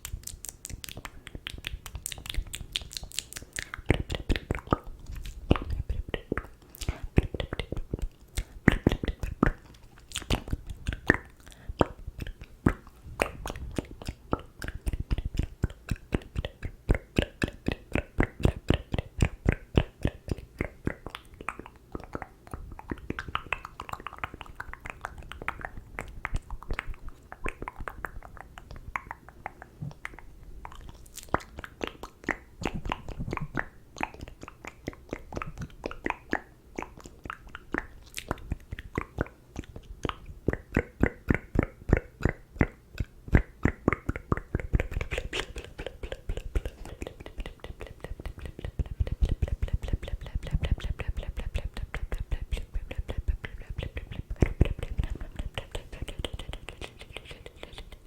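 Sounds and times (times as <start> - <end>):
wet mouth clicks and smacks: 0.0 - 58.0.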